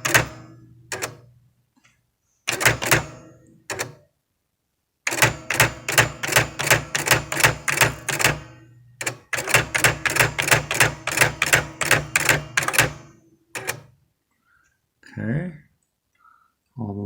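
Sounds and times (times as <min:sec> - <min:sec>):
typewriter key strikes: 0:00.0 - 0:01.2, 0:02.5 - 0:04.0, 0:05.1 - 0:13.9.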